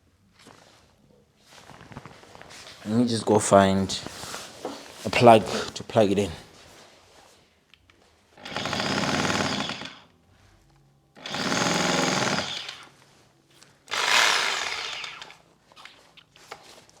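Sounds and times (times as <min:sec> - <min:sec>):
rotary hammer drill rattling: 0:08.4 - 0:10.0, 0:11.2 - 0:12.9, 0:13.9 - 0:15.4.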